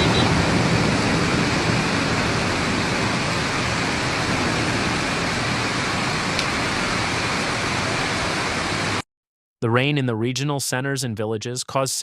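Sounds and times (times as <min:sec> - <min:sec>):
water rushing: 0:00.0 - 0:09.0.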